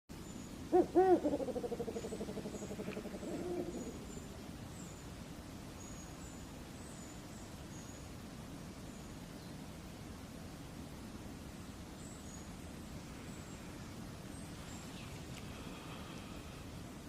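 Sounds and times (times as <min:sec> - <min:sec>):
owl hooting: 0:00.7 - 0:04.3
small birds chirping: 0:01.3 - 0:09.8, 0:11.5 - 0:16.8.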